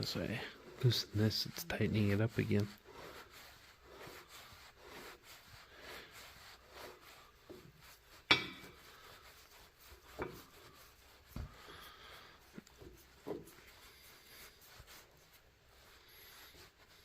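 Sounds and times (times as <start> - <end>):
tools rubbing and scraping metal: 0.0 - 17.0.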